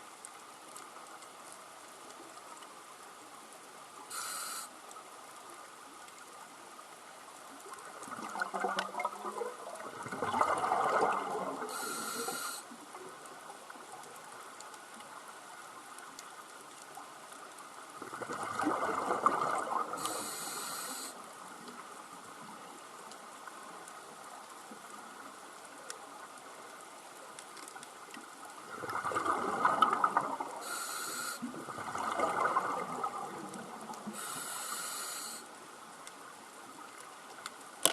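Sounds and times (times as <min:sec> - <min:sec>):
regulator hissing on inhale: 0:04.1 - 0:04.8, 0:11.7 - 0:12.7, 0:20.0 - 0:21.2, 0:30.6 - 0:31.5, 0:34.1 - 0:35.5
exhaled bubbles rushing: 0:08.0 - 0:11.8, 0:18.0 - 0:20.0, 0:28.6 - 0:30.6, 0:31.5 - 0:34.0.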